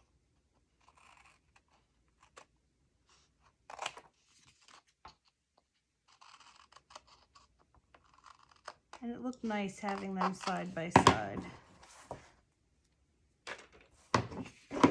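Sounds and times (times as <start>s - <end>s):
paper rustling: 3.1s - 12.4s
scissors snipping cardstock: 8.0s - 11.5s.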